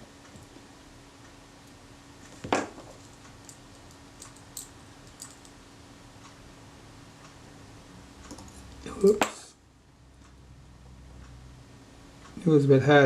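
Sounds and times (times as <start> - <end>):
faint steady hum: 0.0 - 13.0
small metal tools clicking: 3.0 - 5.6, 8.2 - 9.3.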